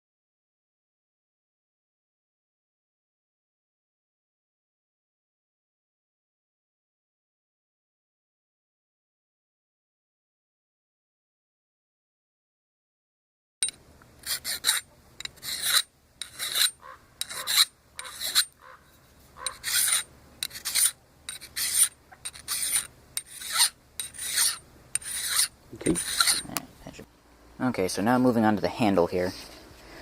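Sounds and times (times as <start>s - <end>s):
hand file rasping on metal: 14.2s - 18.6s, 19.4s - 26.6s.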